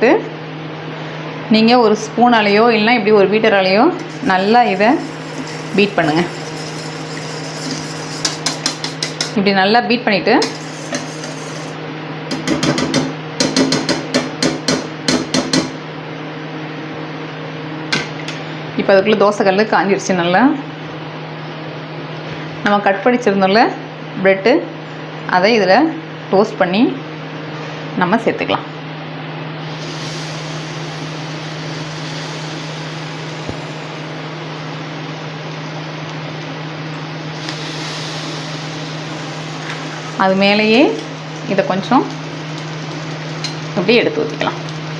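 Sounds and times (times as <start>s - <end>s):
mechanical hum: 0.0s - 44.9s
rushing air hiss: 3.8s - 9.4s, 10.4s - 11.8s, 29.6s - 44.9s
utensil clicking against bowl: 7.6s - 9.4s.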